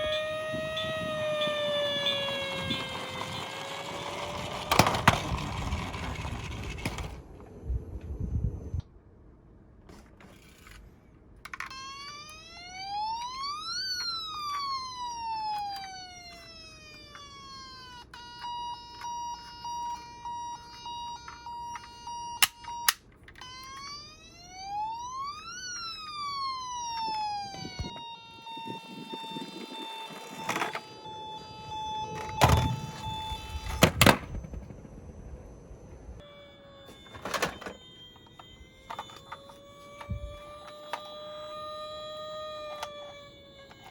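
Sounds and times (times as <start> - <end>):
toy siren wailing: 0.0 - 7.2, 11.4 - 43.9
steady beeping tone: 11.7 - 43.8.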